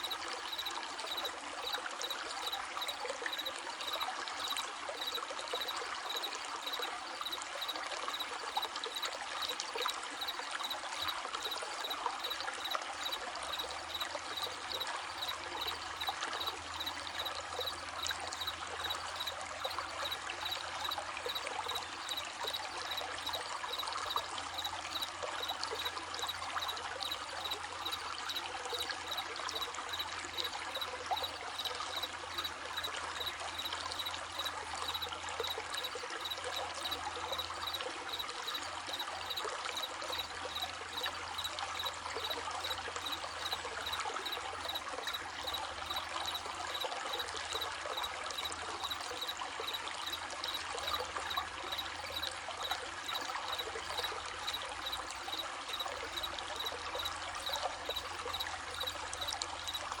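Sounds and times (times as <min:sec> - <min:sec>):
crickets chirping: 0:00.0 - 1:00.0
stream babbling: 0:00.0 - 1:00.0.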